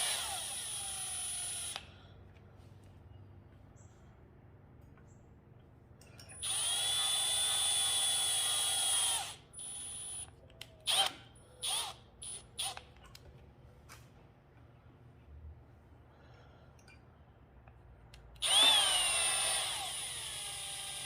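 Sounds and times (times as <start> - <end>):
cordless drill motor whining: 0.0 - 1.9, 6.4 - 10.3, 10.9 - 12.9, 18.4 - 21.0.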